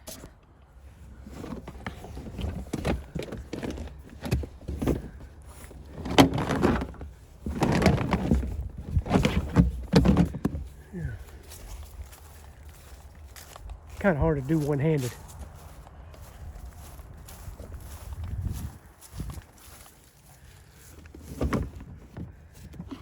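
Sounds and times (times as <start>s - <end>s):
rubber mat rubbing and scraping: 1.0s - 10.9s.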